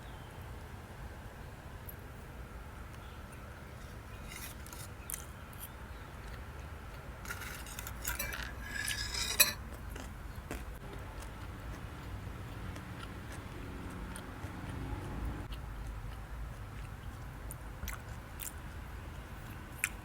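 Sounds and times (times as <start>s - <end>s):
cutlery clinking and scraping on plate: 3.8s - 5.2s, 7.3s - 9.6s.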